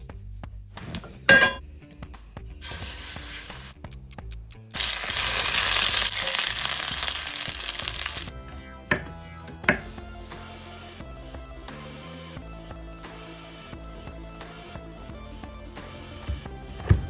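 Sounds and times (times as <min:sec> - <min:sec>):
background music: 0:00.0 - 0:17.0
food sizzling in hot oil: 0:02.6 - 0:03.8, 0:04.8 - 0:08.3.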